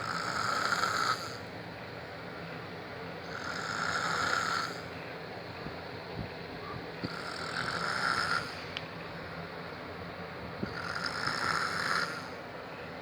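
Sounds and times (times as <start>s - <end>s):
man snoring: 0.0s - 1.4s, 3.3s - 4.8s, 7.1s - 8.5s, 10.6s - 12.3s.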